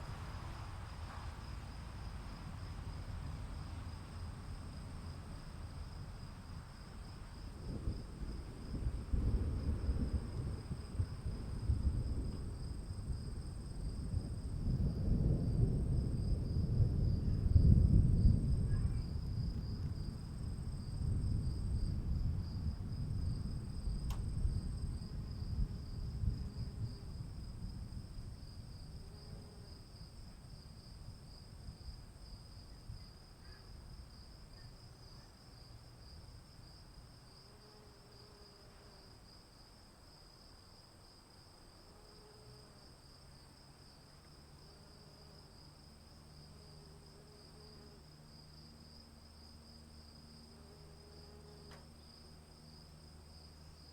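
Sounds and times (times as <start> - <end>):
insects trilling: 0.0 - 53.9
thunder rumbling: 7.2 - 29.0.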